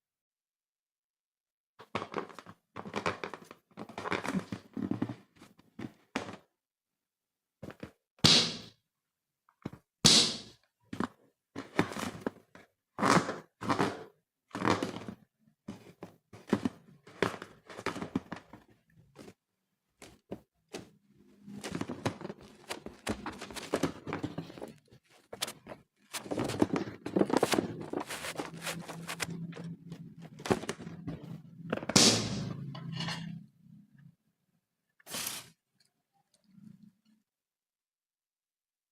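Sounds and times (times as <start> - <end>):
slime squishing: 21.4 - 31.4.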